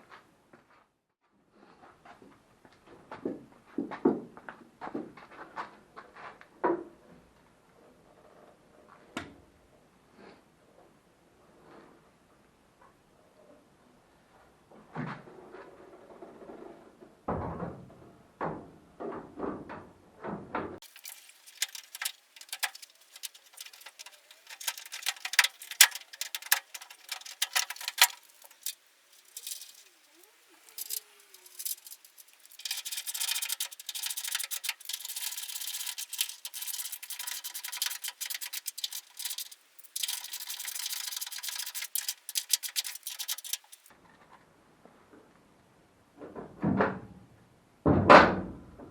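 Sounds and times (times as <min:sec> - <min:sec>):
metal parts knocking and clattering: 0:20.8 - 0:43.9
rapid sharp clicks: 0:20.8 - 0:43.9
scraping and rattling: 0:20.8 - 0:43.9.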